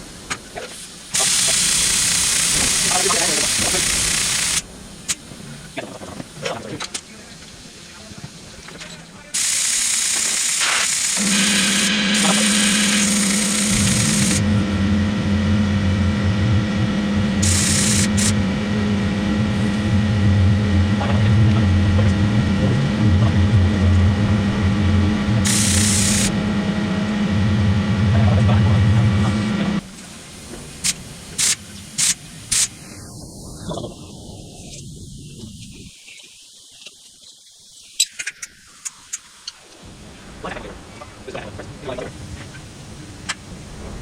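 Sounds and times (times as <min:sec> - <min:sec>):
bursts of hissing: 0:00.0 - 0:06.4, 0:07.0 - 0:14.4, 0:17.4 - 0:18.4, 0:25.4 - 0:26.3, 0:29.8 - 0:39.9
machine motor humming: 0:09.4 - 0:33.0.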